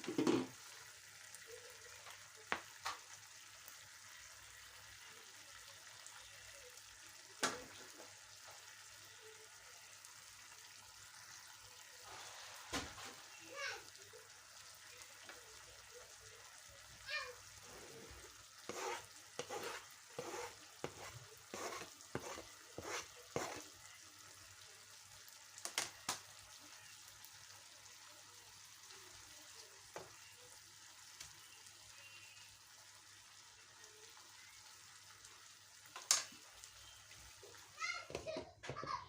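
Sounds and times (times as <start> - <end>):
fish simmering in sauce: 0.0 - 38.4.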